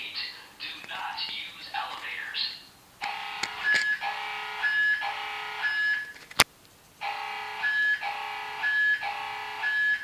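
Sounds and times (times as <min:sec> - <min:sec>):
fire alarm tone pulses: 0:03.0 - 0:06.2, 0:07.0 - 0:10.0.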